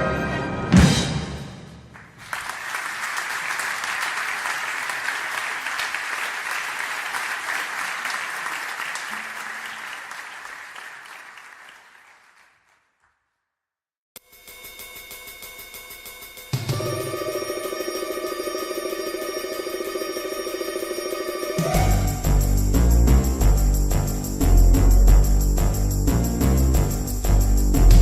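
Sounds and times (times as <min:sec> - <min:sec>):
orchestral music: 0:00.0 - 0:01.6, 0:16.7 - 0:28.0
audience applause: 0:02.0 - 0:12.9.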